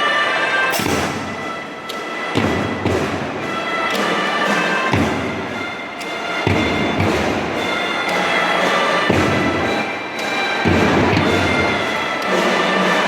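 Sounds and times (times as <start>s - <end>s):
held melody notes: 1.2s - 13.0s
drum band playing: 2.3s - 5.7s, 6.4s - 8.2s, 9.0s - 9.8s, 10.6s - 12.6s.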